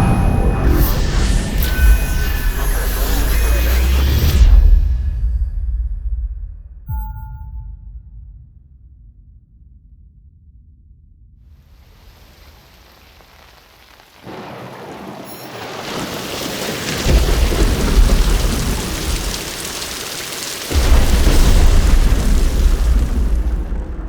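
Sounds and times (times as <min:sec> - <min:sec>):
rain: 0:11.6 - 0:24.0
deep rolling thunder: 0:12.0 - 0:24.0.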